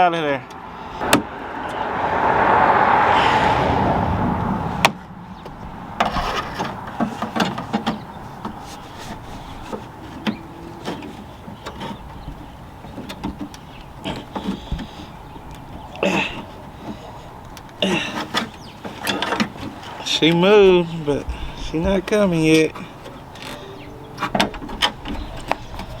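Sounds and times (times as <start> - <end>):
metal parts clicking inside car door: 9.6 - 20.4.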